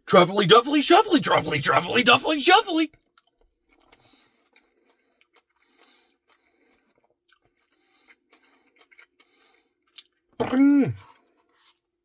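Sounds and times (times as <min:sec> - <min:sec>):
soft chewing: 0:03.2 - 0:10.1, 0:10.9 - 0:11.8.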